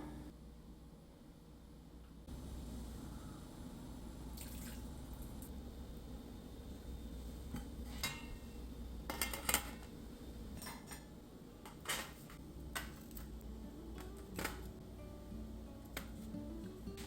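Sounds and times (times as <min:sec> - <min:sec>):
metal kitchenware clinking: 0:07.9 - 0:08.5, 0:09.1 - 0:09.9, 0:10.5 - 0:13.3.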